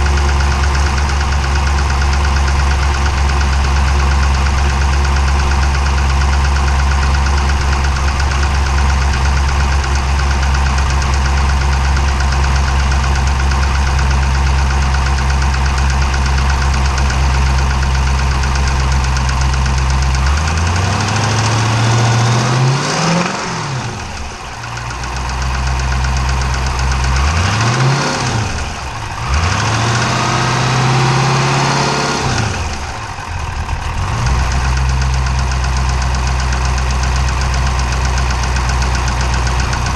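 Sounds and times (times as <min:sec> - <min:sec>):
car engine idling with knock: 0:00.0 - 0:22.6, 0:23.3 - 0:39.9
car engine revving: 0:14.9 - 0:24.1, 0:25.8 - 0:36.9.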